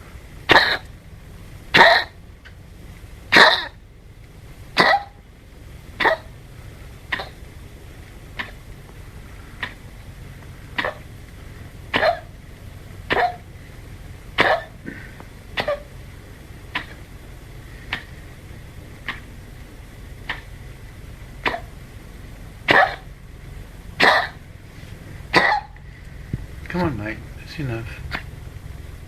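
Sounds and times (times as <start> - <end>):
small dog coughing: 0.5 - 0.9, 1.7 - 2.2, 3.3 - 3.8, 4.8 - 5.2, 6.0 - 6.3, 7.1 - 7.4, 8.4 - 8.6, 9.6 - 9.8, 10.8 - 11.1, 11.9 - 12.4, 13.1 - 13.5, 14.4 - 15.9, 16.7 - 17.0, 17.9 - 18.2, 19.0 - 19.3, 20.2 - 20.5, 21.4 - 21.7, 22.6 - 23.1, 24.0 - 24.4, 25.3 - 25.8.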